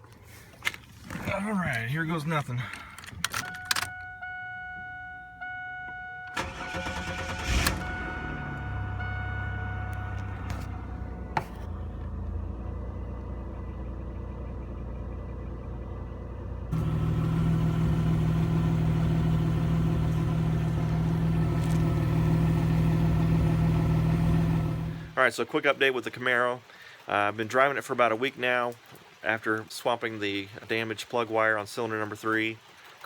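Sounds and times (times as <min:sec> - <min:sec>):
car engine idling: 0:01.3 - 0:25.2.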